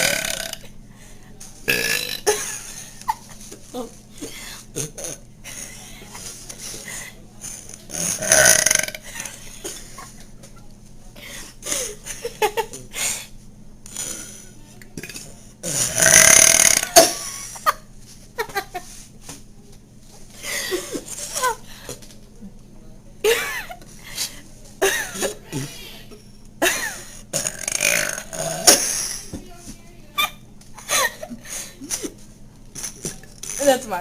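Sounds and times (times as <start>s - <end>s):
girl burping loudly: 0.0s - 0.7s, 1.7s - 2.4s, 7.9s - 9.1s, 15.0s - 17.2s, 27.3s - 29.0s.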